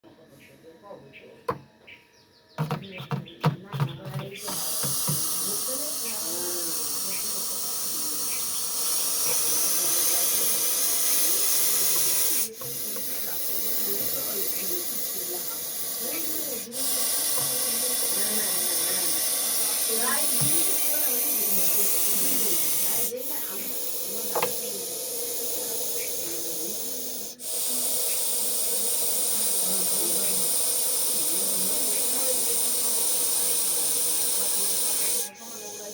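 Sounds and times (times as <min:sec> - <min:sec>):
snake hissing: 0:04.3 - 0:35.9.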